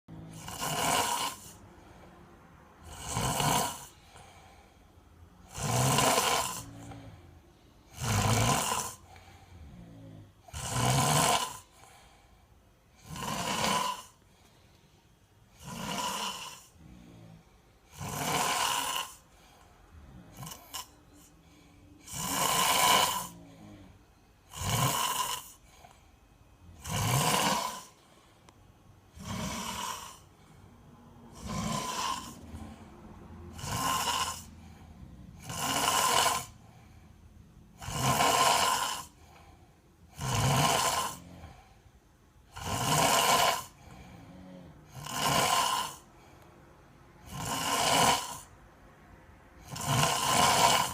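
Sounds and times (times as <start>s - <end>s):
child snoring loudly: 0.1s - 1.7s, 2.8s - 4.6s, 5.4s - 12.1s, 13.0s - 14.2s, 15.5s - 25.9s, 26.7s - 28.0s, 29.1s - 30.6s, 31.2s - 37.0s, 37.8s - 41.8s, 42.5s - 46.2s, 47.2s - 48.6s, 49.6s - 50.9s
quiet breathing: 1.1s - 5.5s, 6.5s - 8.0s, 8.9s - 10.5s, 11.5s - 13.2s, 14.0s - 18.0s, 18.8s - 24.5s, 25.3s - 26.8s, 27.7s - 35.8s, 36.4s - 37.8s, 39.0s - 40.1s, 41.2s - 42.5s, 43.6s - 45.1s, 45.9s - 47.3s.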